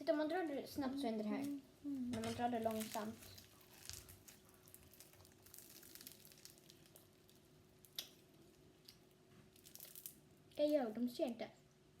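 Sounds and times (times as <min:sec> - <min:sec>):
slime crackling and popping: 0:02.2 - 0:10.8.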